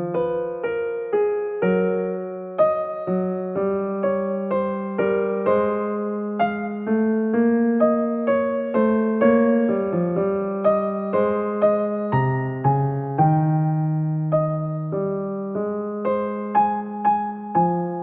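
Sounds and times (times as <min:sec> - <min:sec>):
gentle solo piano melody: 0:00.0 - 0:18.0.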